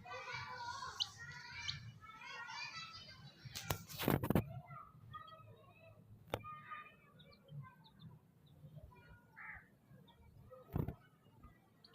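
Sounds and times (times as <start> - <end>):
baby chicks peeping: 0.1 - 4.4, 6.9 - 9.2.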